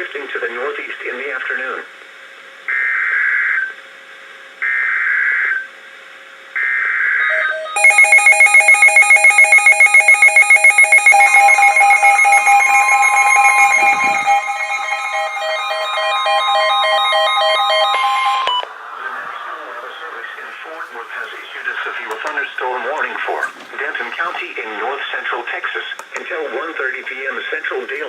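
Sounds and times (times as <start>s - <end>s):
rapid electronic alarm beeping: 6.6s - 18.6s
steady warning tone: 7.2s - 19.3s
digital header bursts: 7.8s - 18.4s.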